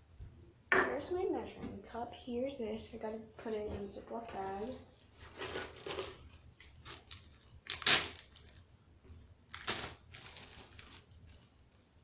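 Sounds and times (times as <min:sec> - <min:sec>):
plastic bag crinkling: 0:04.3 - 0:08.7, 0:09.5 - 0:11.7.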